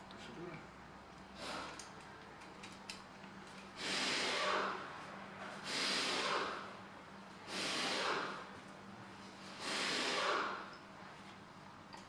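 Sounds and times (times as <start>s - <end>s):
hissing bursts: 9.6s - 10.6s.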